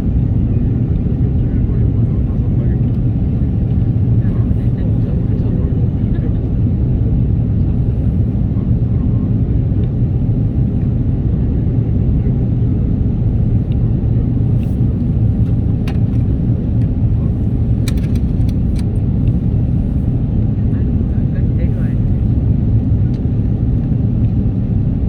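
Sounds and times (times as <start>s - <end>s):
jet engine cabin rumble: 0.0s - 25.0s
light clicks: 17.8s - 19.4s.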